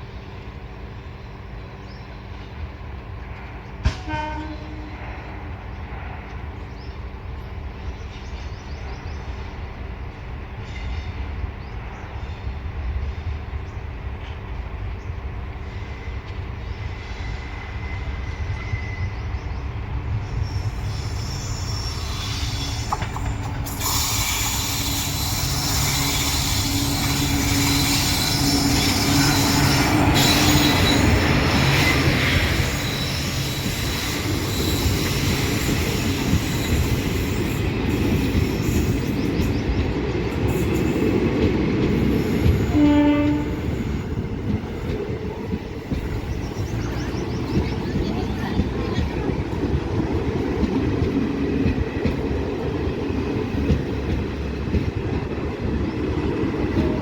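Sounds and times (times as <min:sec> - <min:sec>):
train rumbling on track: 0:00.0 - 0:57.0
train horn blast: 0:03.9 - 0:05.4, 0:23.8 - 0:31.2, 0:42.4 - 0:44.1
wheel and brake squeal: 0:16.9 - 0:19.3, 0:20.4 - 0:39.6.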